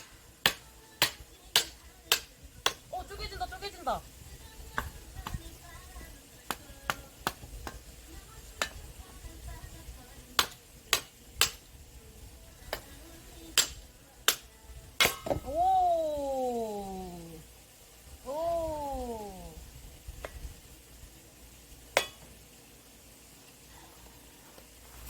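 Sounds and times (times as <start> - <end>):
axe striking firewood: 0.0 - 3.0, 6.5 - 7.9, 8.6 - 8.9, 10.4 - 11.7, 13.6 - 15.5, 21.9 - 22.4.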